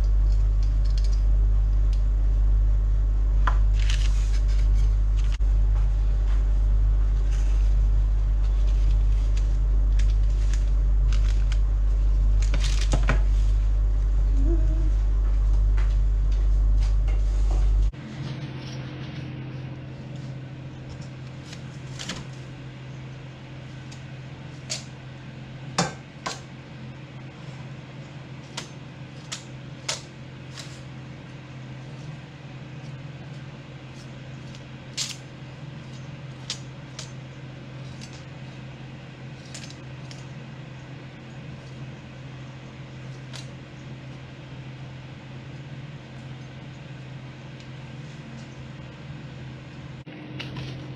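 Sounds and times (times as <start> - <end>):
loud low rumble: 0.0 - 25.8
low electrical hum: 0.0 - 50.9.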